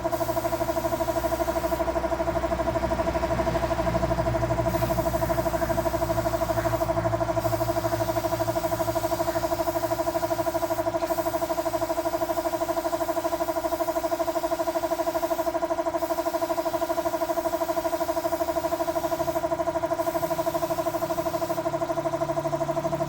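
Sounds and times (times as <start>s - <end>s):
small motor humming with pulse: 0.0s - 23.0s.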